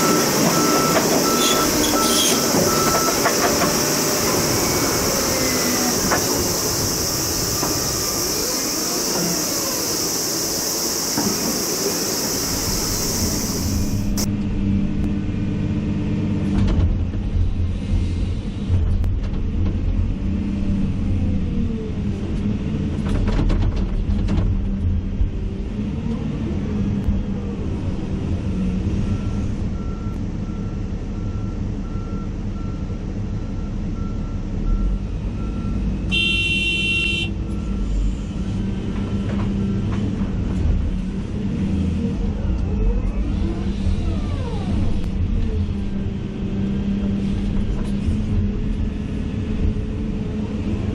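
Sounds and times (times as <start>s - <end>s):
excavator engine running: 0.0s - 14.3s.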